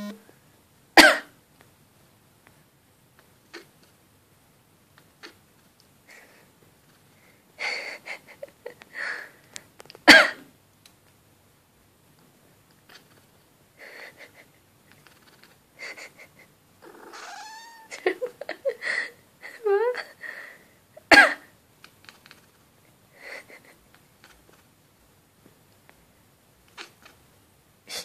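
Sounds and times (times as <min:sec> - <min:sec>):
person coughing: 0:01.0 - 0:01.3, 0:10.1 - 0:10.5, 0:21.1 - 0:21.5
dog whining: 0:16.9 - 0:18.0.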